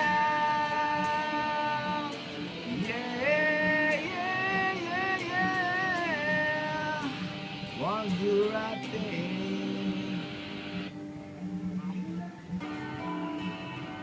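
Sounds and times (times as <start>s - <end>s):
person singing wordless notes: 0.0s - 10.6s
plucked acoustic guitar: 0.0s - 14.0s.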